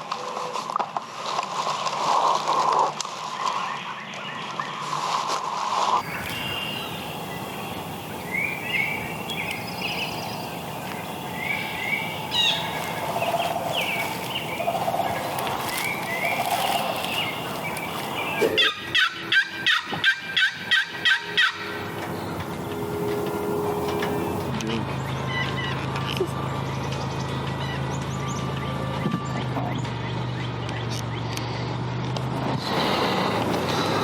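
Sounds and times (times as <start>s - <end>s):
wild turkeys calling: 6.0s - 24.5s, 25.1s - 26.1s
small birds chirping: 6.0s - 31.8s.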